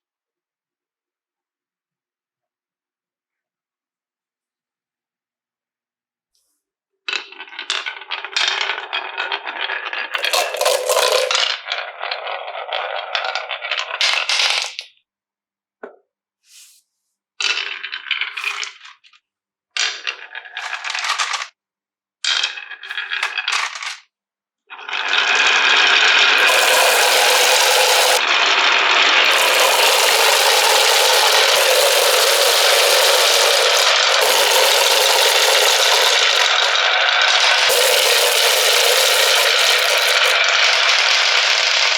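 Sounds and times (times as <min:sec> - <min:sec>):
marbles rattling down wooden run: 0:07.1 - 0:14.8, 0:19.8 - 0:21.5, 0:22.3 - 0:24.0, 0:24.8 - 0:41.9.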